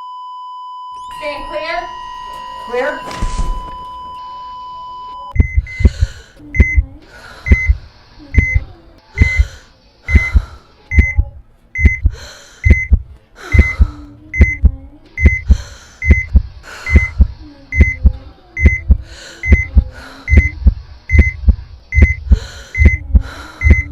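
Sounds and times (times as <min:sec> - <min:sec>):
heart monitor beeping: 0:00.0 - 0:23.9
heartbeat thumps: 0:05.3 - 0:23.9
heavy breathing: 0:05.6 - 0:08.6, 0:09.2 - 0:10.9, 0:12.0 - 0:14.3, 0:15.3 - 0:17.4, 0:18.9 - 0:20.9, 0:22.2 - 0:23.9.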